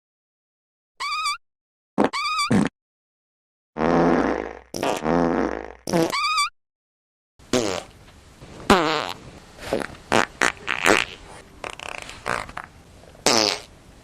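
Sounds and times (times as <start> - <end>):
farts: 2.0 - 2.7, 3.8 - 6.3, 7.5 - 7.9, 8.7 - 13.7.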